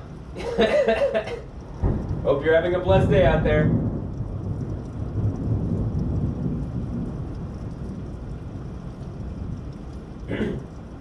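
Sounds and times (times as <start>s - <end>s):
rolling thunder: 0.0s - 11.0s
steady rain: 0.0s - 11.0s.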